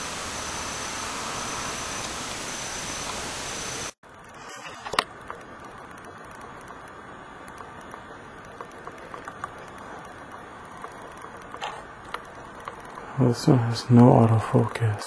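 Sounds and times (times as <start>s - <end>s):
microphone hiss: 0.0s - 15.0s
faint ticks: 5.0s - 15.0s.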